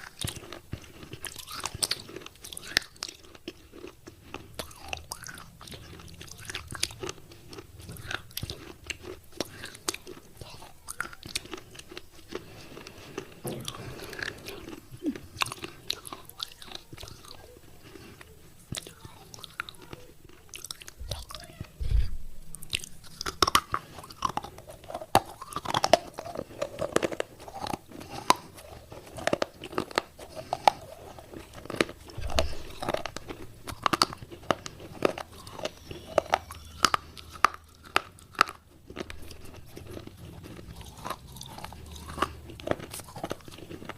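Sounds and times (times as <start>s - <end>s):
clay pieces being chewed: 0.0s - 21.8s, 22.5s - 43.9s
dull low thumps: 21.8s - 22.7s, 32.1s - 33.7s.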